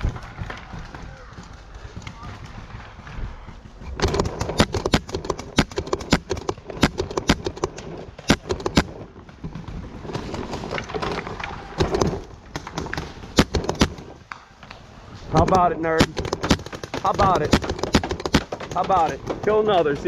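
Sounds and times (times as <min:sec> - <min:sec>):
paintball markers firing: 0:04.0 - 0:09.0, 0:11.8 - 0:14.2, 0:15.5 - 0:20.0.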